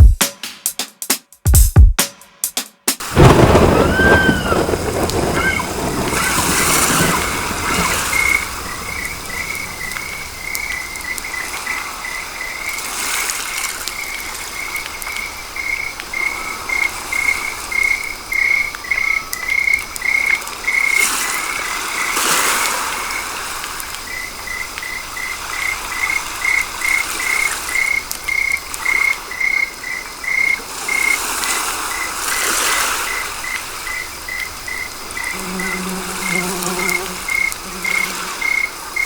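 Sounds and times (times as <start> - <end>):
steady hiss: 31.0 - 39.0.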